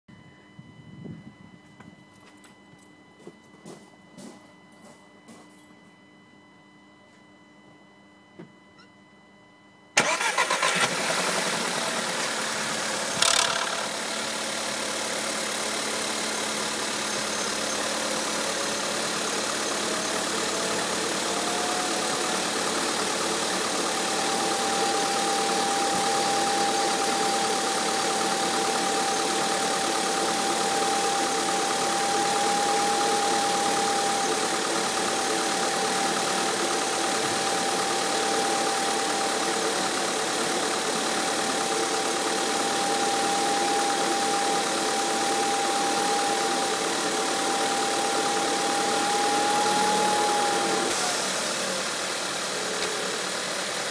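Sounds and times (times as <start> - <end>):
engine whine rising in pitch: 9.5 - 53.7
harsh engine burst: 10.0 - 14.0
car engine idling: 10.0 - 53.4.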